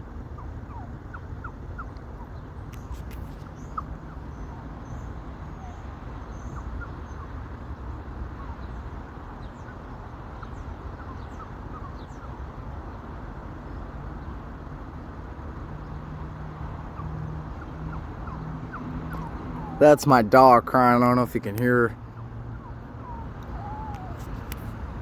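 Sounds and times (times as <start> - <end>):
bird chirps: 23.0 - 24.6.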